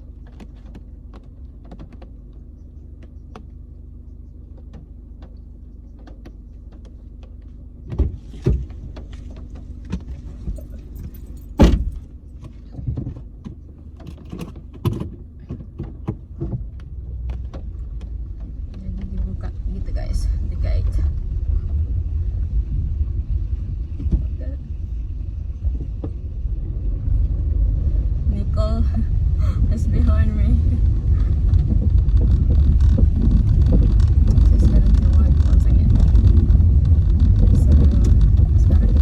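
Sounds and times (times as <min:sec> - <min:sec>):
car cabin rumble: 0:00.0 - 0:39.0
knocks and thumps: 0:04.5 - 0:12.1, 0:12.7 - 0:19.3, 0:31.1 - 0:39.0.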